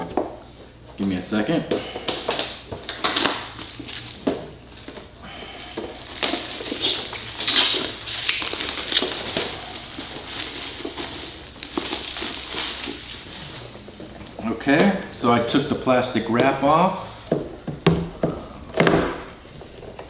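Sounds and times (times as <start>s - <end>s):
plastic shrink wrap tearing: 2.1s - 4.9s, 5.6s - 13.7s.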